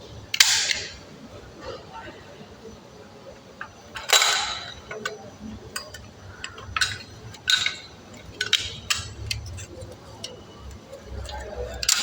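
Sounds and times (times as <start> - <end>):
small hard objects clicking: 3.7 - 12.0.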